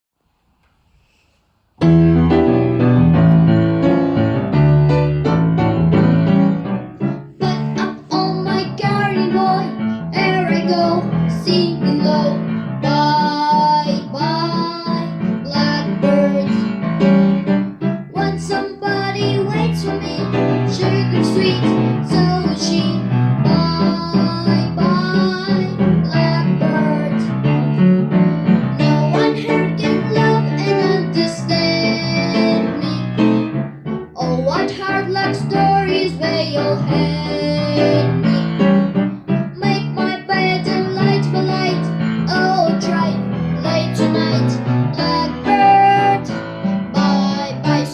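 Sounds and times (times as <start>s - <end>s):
piano accompaniment: 1.7s - 47.9s
person singing: 7.2s - 16.9s, 18.1s - 27.3s, 28.8s - 33.5s, 34.1s - 47.9s.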